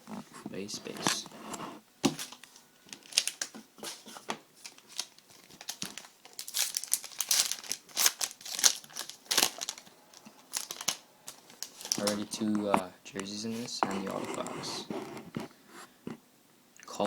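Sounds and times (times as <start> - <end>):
cards being shuffled: 0.8 - 12.9
wrapper crinkling: 2.1 - 12.7.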